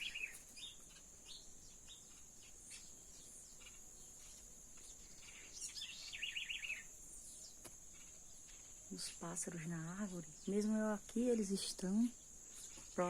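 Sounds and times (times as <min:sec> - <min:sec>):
high insect hiss: 0:00.0 - 0:13.0
small birds chirping and singing: 0:00.0 - 0:13.0.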